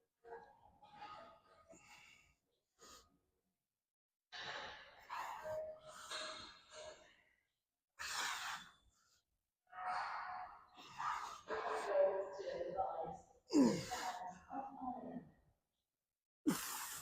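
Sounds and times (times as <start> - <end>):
man breathing hard with effort: 8.0 - 9.3, 16.5 - 17.0.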